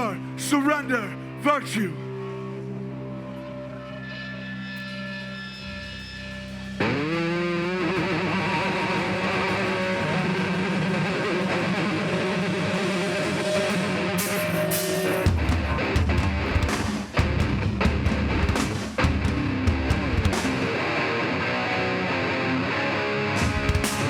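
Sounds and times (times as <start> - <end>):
distorted electric guitar riff: 0.0 - 24.0
band with heavy low end: 4.0 - 20.9, 23.3 - 24.0.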